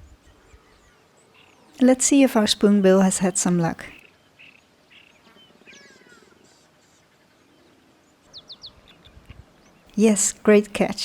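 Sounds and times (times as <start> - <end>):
faint bird chirps: 3.9 - 9.9.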